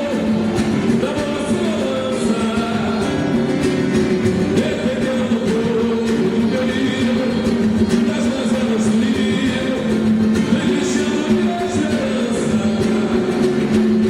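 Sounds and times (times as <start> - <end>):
live samba band playing: 0.0 - 14.0
person singing: 4.5 - 14.0.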